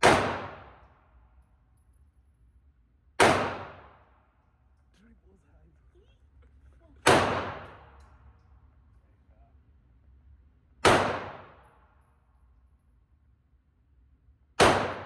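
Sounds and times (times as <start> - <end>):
pistol shots echoing: 0.0 - 0.9, 3.2 - 4.0, 7.0 - 8.0, 10.8 - 11.7, 14.6 - 15.0.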